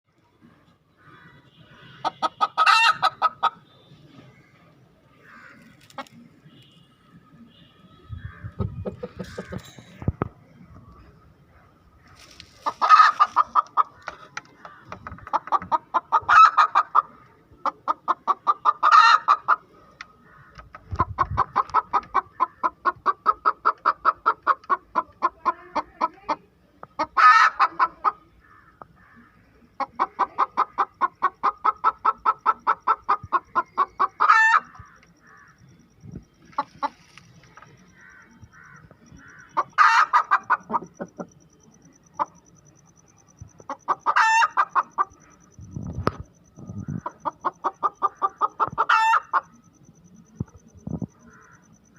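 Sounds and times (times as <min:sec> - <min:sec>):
hen drawn-out call: 0:01.0 - 0:03.6, 0:33.8 - 0:35.6, 0:38.0 - 0:41.0, 0:43.9 - 0:45.2, 0:47.0 - 0:49.5
hen clucking rapidly: 0:02.0 - 0:03.6, 0:08.2 - 0:10.3, 0:12.2 - 0:35.6, 0:36.3 - 0:51.8.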